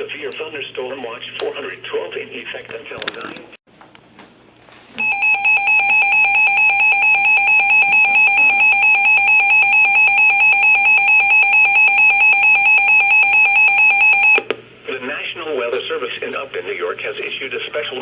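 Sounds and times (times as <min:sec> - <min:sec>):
two-tone alert signal: 0:05.0 - 0:14.4.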